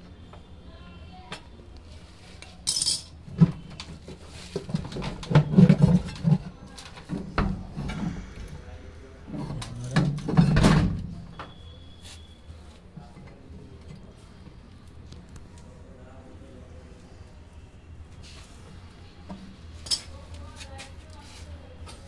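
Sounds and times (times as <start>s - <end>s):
metal clinks and scrapes of tools: 2.4s - 3.2s
faint low hum: 5.2s - 21.8s.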